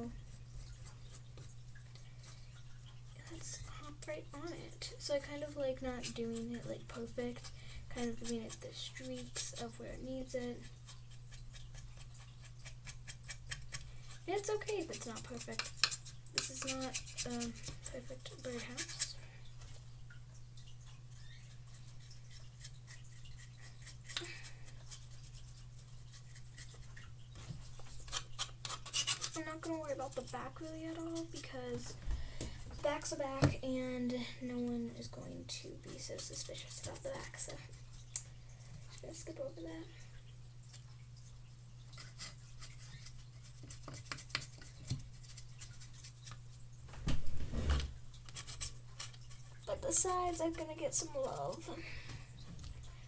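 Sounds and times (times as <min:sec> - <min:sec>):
paintbrush scratching on wood: 0:14.2 - 0:19.2.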